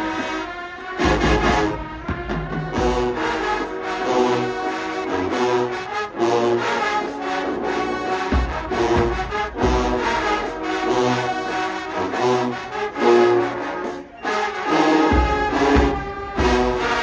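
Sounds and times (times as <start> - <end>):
marching band brass chords: 0.0 - 17.0.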